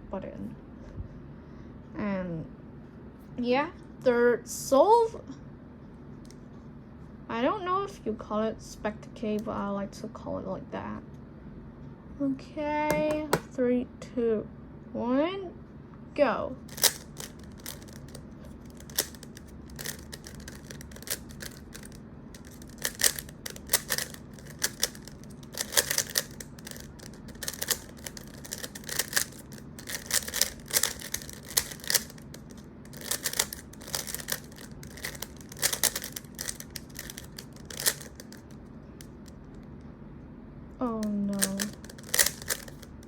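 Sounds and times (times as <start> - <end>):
puzzle cube plastic clicks: 16.7 - 39.3, 41.0 - 43.0.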